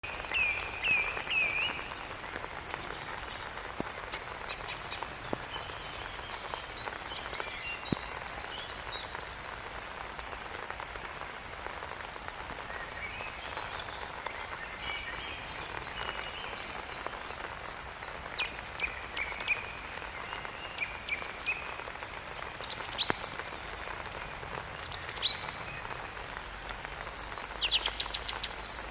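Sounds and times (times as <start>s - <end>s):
songbird chirping: 0.0s - 9.4s, 27.2s - 28.9s
steady rain falling: 0.0s - 28.9s.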